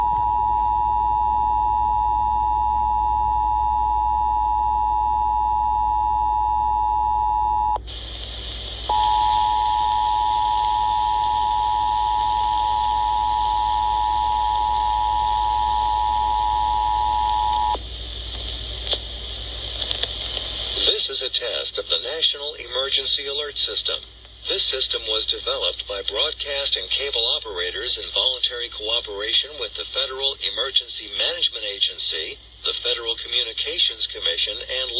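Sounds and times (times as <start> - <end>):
two-tone alert signal: 0.0 - 0.7.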